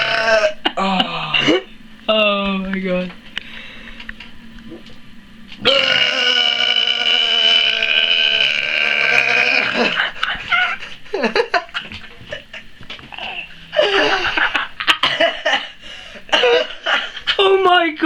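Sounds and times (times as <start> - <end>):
man burping loudly: 0.0 - 1.7, 5.6 - 10.2, 13.0 - 14.3
bursts of laughter: 5.8 - 12.8.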